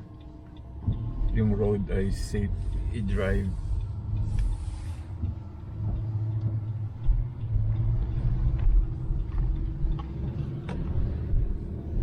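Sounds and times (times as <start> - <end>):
vehicle engine and tyres rumbling: 0.0 - 12.0.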